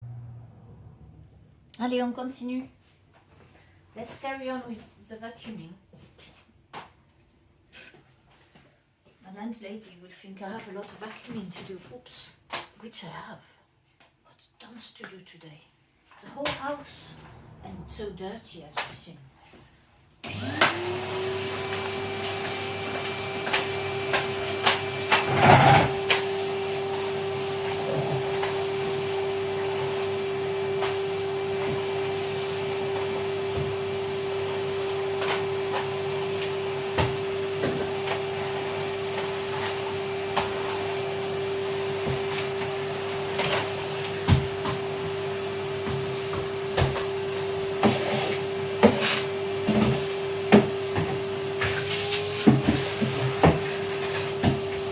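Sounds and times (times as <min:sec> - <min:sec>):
vacuum cleaner motor whining: 0:20.2 - 0:54.9.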